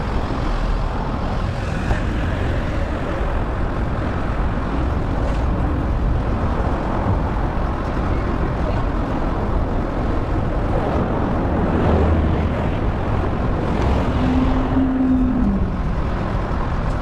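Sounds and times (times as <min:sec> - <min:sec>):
road and wind noise: 0:00.0 - 0:17.0
vehicle traffic: 0:00.0 - 0:17.0
hum dropping in pitch: 0:13.6 - 0:16.4.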